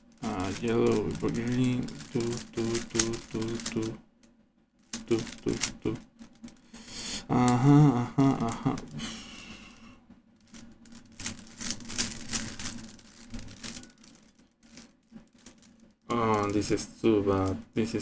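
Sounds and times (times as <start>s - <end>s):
puzzle cube clicking and rattling: 0.1s - 4.0s, 4.9s - 9.8s, 10.5s - 17.6s
short vocal sound: 0.2s - 4.0s, 5.0s - 6.0s, 6.9s - 10.0s.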